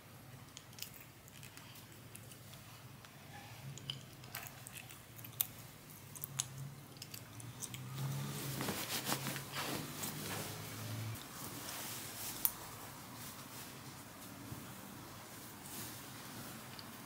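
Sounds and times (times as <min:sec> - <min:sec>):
cloth rustling and crinkling: 0:07.9 - 0:17.0.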